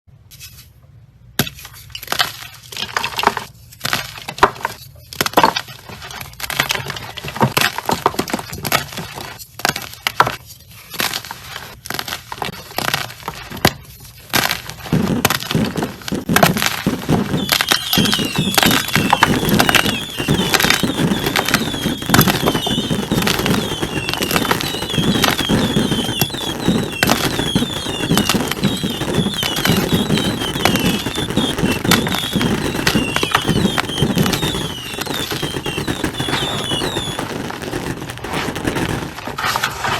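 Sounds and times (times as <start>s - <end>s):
squeaky chirps: 17.2s - 37.3s.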